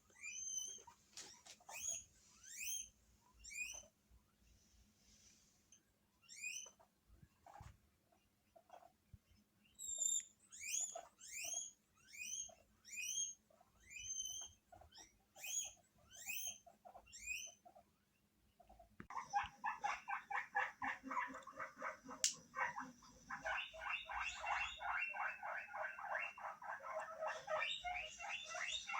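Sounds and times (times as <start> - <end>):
guinea pig squealing whistles: 0.1 - 3.9, 6.2 - 6.8, 9.7 - 17.7, 22.6 - 28.9.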